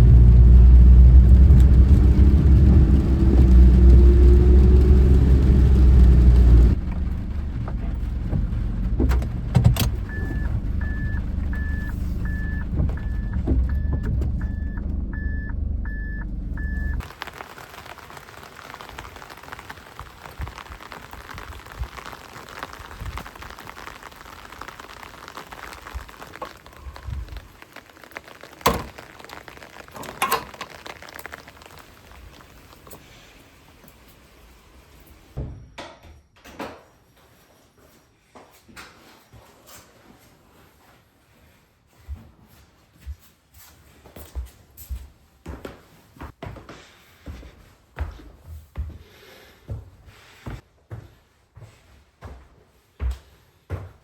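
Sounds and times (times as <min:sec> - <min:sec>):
car engine: 0:00.0 - 0:19.5, 0:20.6 - 0:35.4
car parking beeps: 0:09.1 - 0:17.0.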